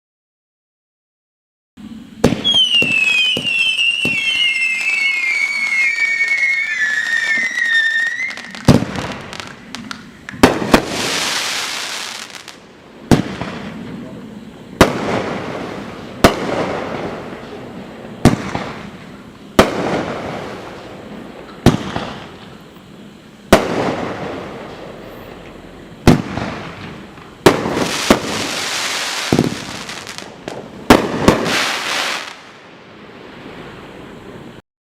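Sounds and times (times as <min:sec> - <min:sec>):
firework whistles: 0:01.8 - 0:17.6, 0:18.2 - 0:34.6
hiss and crackle of bursts: 0:01.8 - 0:34.6
firework shots: 0:02.1 - 0:22.7, 0:23.5 - 0:33.8.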